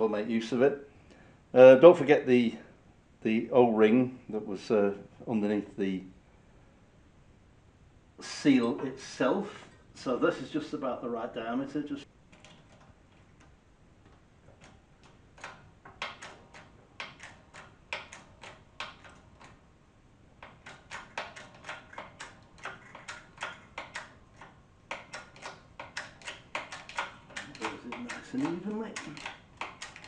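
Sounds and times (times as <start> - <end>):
workshop press clicking: 20.4 - 30.0.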